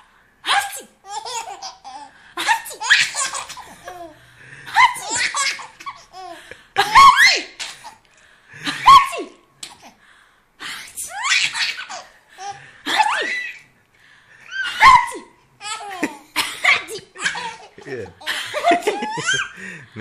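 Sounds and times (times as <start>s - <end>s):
baby laughing: 1.0s - 8.0s, 11.1s - 13.6s, 14.5s - 19.6s.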